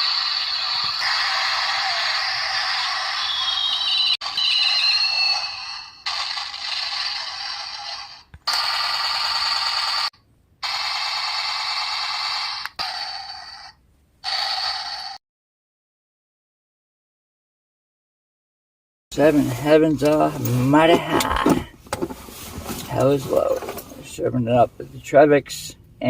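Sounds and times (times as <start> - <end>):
whistling tone splitting in two: 3.0 - 5.6.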